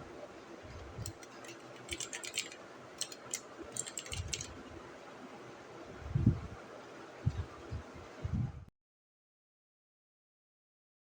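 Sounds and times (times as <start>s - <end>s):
mechanical keyboard clicks: 1.0s - 4.6s.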